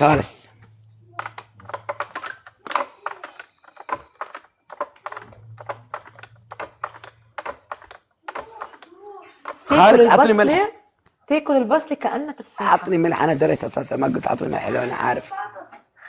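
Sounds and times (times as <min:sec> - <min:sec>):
irregular clicks and taps: 0:01.2 - 0:09.9.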